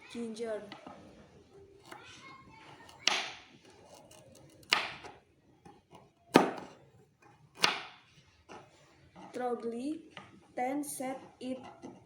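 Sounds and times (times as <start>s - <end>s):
knife chopping: 2.8s - 5.2s, 6.3s - 6.7s, 7.5s - 8.0s.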